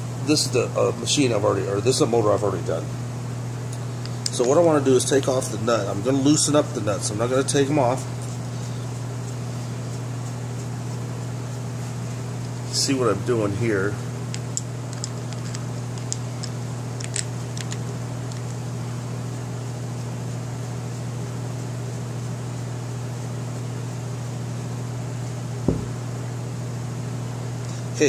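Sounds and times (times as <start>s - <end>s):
low electrical hum: 0.0s - 28.0s
knock: 25.7s - 26.0s.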